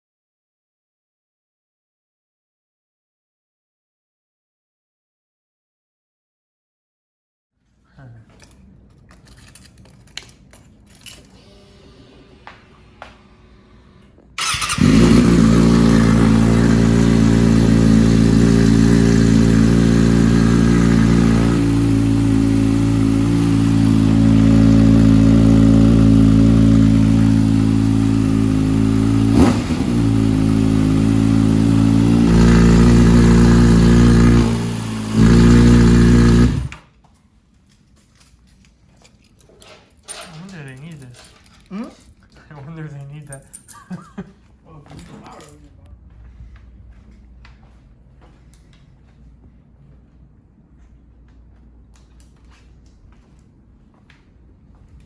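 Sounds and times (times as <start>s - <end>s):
motorcycle engine idling: 14.4s - 36.7s.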